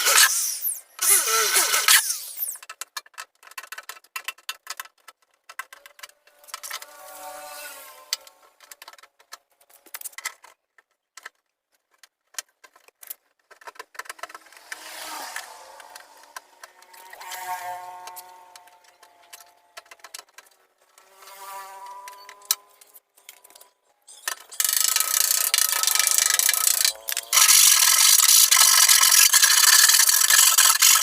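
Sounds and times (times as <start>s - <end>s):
sharp clicks of tools: 0.0s - 7.0s, 18.0s - 31.0s
soft whirring tone: 14.9s - 19.2s.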